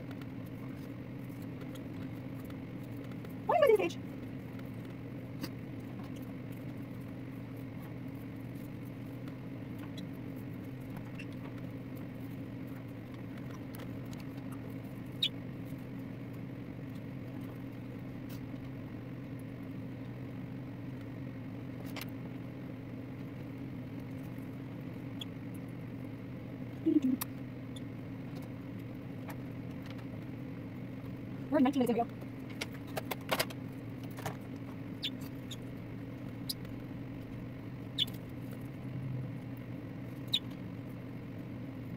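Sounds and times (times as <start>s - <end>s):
low room hum: 0.0s - 41.9s
small bird chirp: 9.8s - 10.2s, 10.9s - 11.6s, 13.4s - 15.4s, 25.0s - 25.4s, 34.9s - 36.7s, 37.8s - 38.5s, 40.1s - 40.6s.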